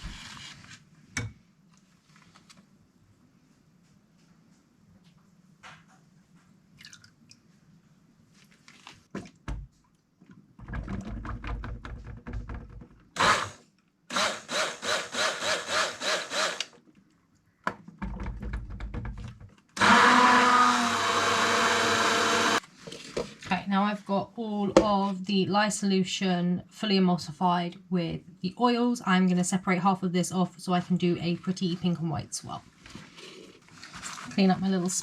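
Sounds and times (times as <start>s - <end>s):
stick blender running: 13.2s - 16.7s, 19.8s - 22.6s.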